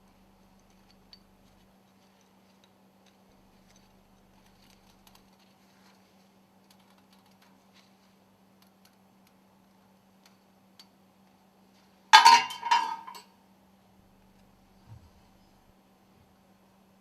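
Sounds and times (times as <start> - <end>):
metal rings clinking: 12.2 - 13.2.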